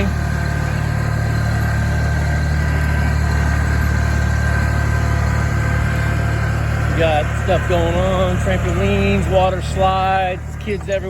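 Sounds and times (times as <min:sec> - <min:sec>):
low engine drone: 0:00.0 - 0:11.0.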